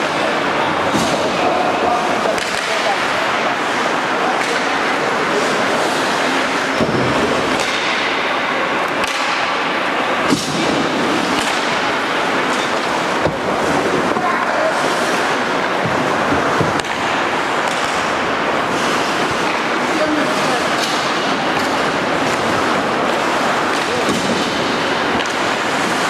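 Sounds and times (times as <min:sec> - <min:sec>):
hockey stick and puck knocks: 0:06.8 - 0:08.2, 0:08.9 - 0:13.5, 0:23.7 - 0:26.0.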